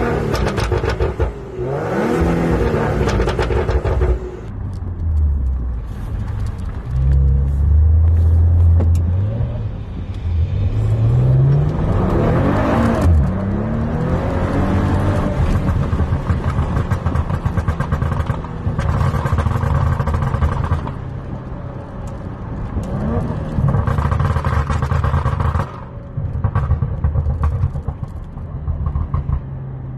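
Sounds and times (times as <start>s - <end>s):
car exhaust revving: 0.0s - 4.5s
exhaust crackles and pops: 0.0s - 9.2s, 9.9s - 29.9s.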